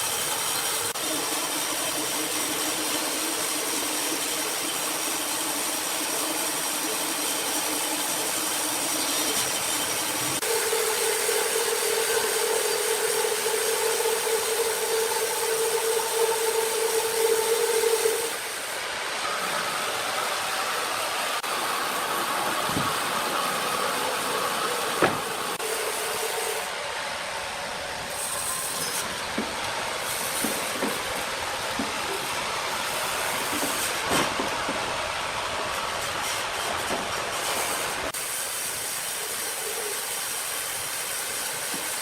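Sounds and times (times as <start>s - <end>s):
big saw whining: 0.0s - 38.2s.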